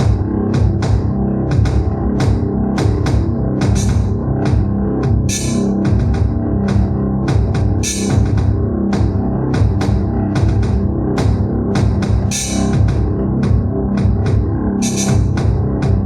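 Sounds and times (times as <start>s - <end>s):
electronic keyboard rock rhythm: 0.0s - 16.0s
cymbal crash: 5.3s - 5.7s, 7.8s - 8.3s, 12.3s - 12.8s.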